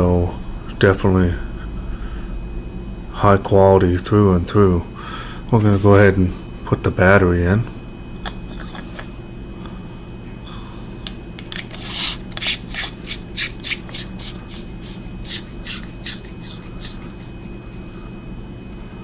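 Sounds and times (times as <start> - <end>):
flashlight cap screwing scrapes: 8.2 - 9.1, 11.4 - 18.1.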